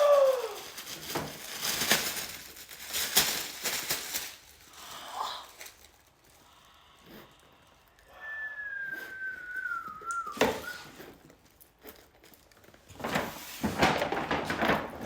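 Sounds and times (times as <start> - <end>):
rustling crinkling noise: 0.0 - 8.1, 8.7 - 15.0
whistle tone sliding down: 8.1 - 10.9.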